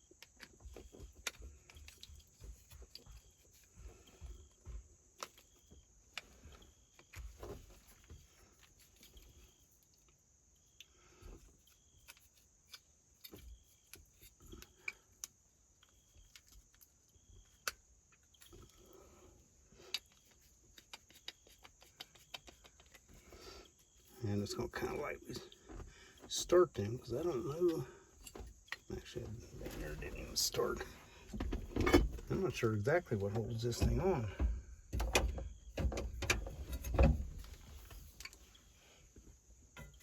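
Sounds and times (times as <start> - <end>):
small metal parts clicking: 0.2 - 3.7, 8.6 - 19.0, 19.8 - 24.2
soft rustling: 18.4 - 34.9, 36.4 - 39.9.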